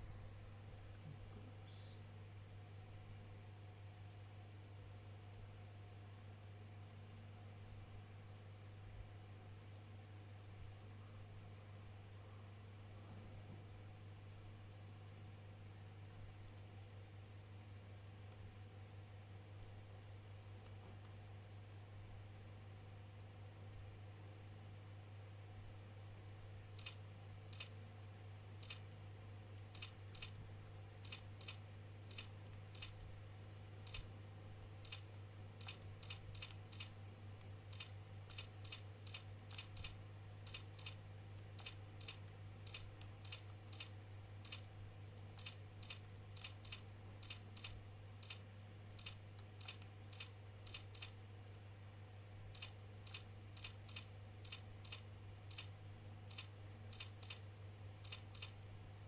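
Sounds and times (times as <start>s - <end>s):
faint low hum: 0.0s - 59.0s
keyboard keys clicking: 28.6s - 28.9s, 29.6s - 30.4s, 34.8s - 36.9s, 37.7s - 44.7s, 45.4s - 48.4s.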